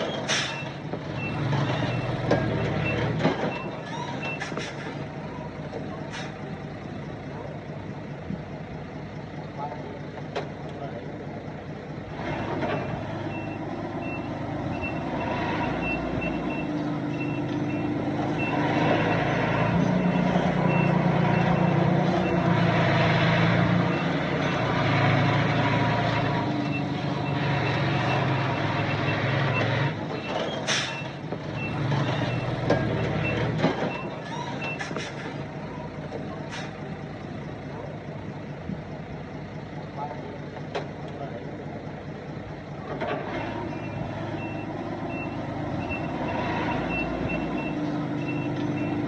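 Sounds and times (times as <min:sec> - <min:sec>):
loud diesel engine: 0:00.0 - 0:49.0
reversing alarm beeping: 0:13.3 - 0:22.5, 0:43.8 - 0:49.0.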